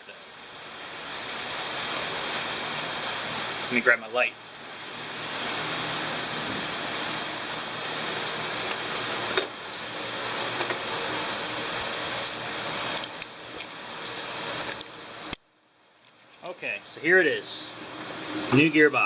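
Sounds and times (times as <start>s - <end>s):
steady hissing: 16.2s - 19.0s.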